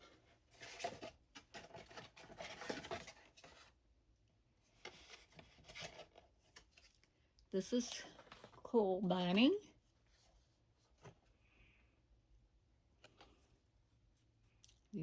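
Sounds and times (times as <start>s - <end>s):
card and paper rustling: 0.5s - 3.7s, 4.7s - 7.0s, 7.7s - 11.2s.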